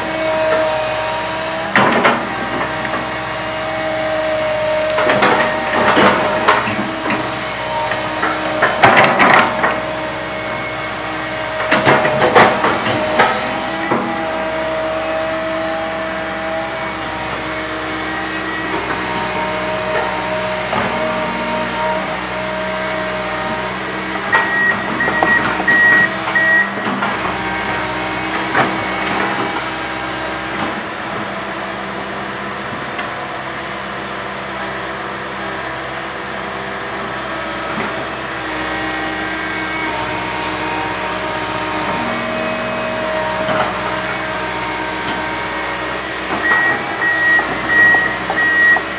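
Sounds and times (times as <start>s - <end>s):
excavator diesel engine running: 0.0s - 48.9s
clanks and knocks: 1.7s - 3.2s, 4.8s - 10.0s, 11.4s - 14.2s.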